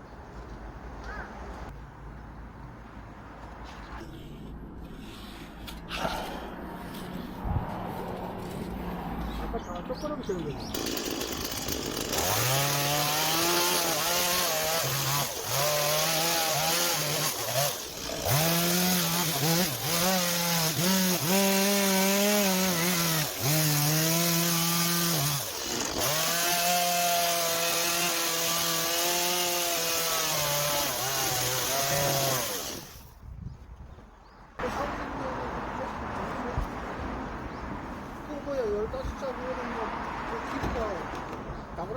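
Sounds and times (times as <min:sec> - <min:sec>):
chainsaw cutting wood: 0:10.6 - 0:33.1.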